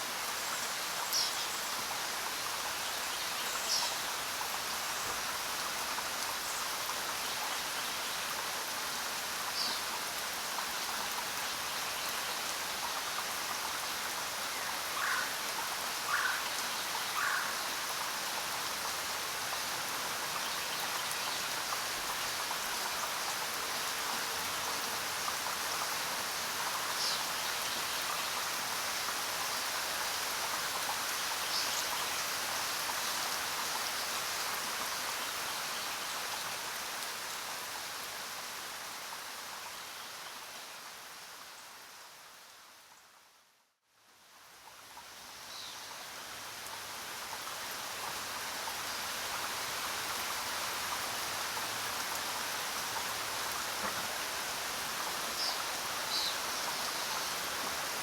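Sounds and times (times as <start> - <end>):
heavy rain falling: 46.2 - 58.0.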